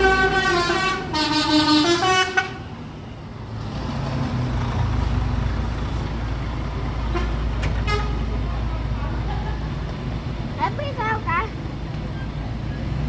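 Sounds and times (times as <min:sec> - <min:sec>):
bus musical horn tune: 0:00.0 - 0:02.6, 0:07.1 - 0:08.3
bus engine rumble: 0:00.0 - 0:13.0.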